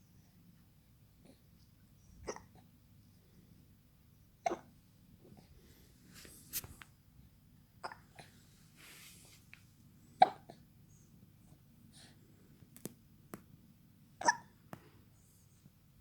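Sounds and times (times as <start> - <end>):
baby hiccupping: 2.2 - 2.6, 4.4 - 4.7, 7.8 - 8.1, 10.2 - 10.6, 14.2 - 14.5.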